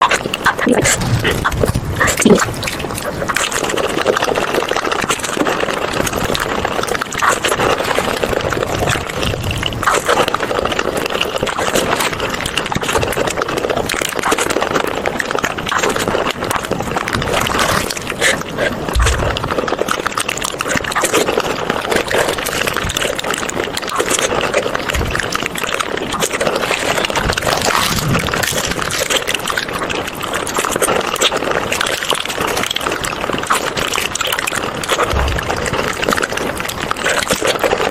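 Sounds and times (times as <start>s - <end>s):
small crackles and clicks: 0.0s - 37.9s
wet chewing and mouth smacking: 0.0s - 37.9s.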